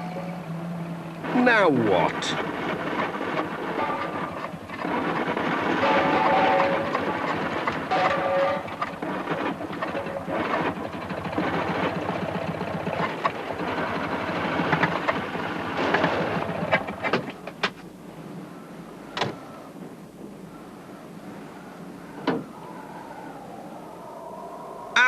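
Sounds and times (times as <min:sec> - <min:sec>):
train wheels clacking on rails: 0:01.2 - 0:17.8
train whistle: 0:03.7 - 0:04.4, 0:05.7 - 0:08.8.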